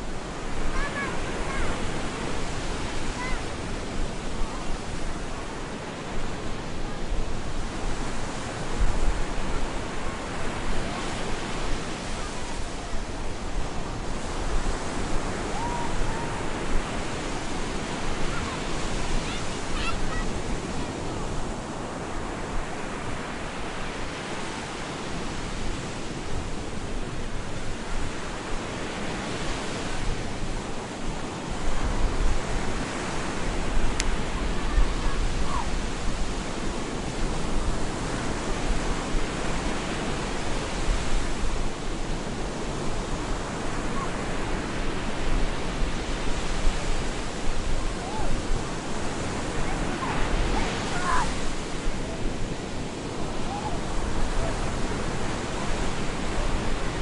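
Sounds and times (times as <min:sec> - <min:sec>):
waves breaking on a beach: 0:00.0 - 0:57.0.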